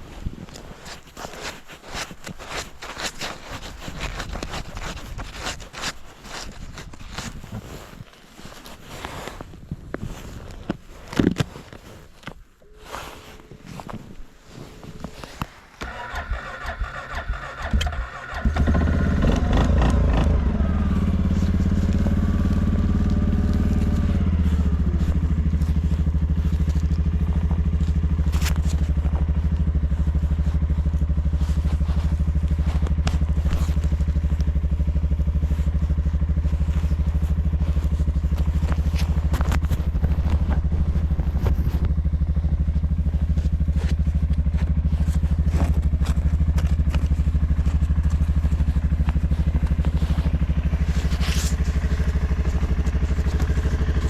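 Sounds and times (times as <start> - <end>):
starter motor cranking whine: 15.8 - 21.2
engine idling: 15.8 - 54.0.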